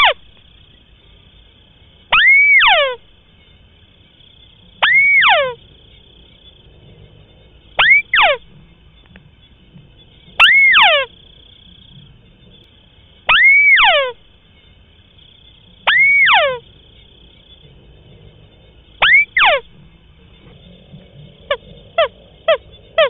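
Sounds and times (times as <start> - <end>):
bird call with downward slide: 0.0 - 0.2, 2.1 - 3.0, 4.8 - 5.6, 7.8 - 8.5, 10.4 - 11.1, 13.3 - 14.2, 15.8 - 16.6, 19.0 - 19.7.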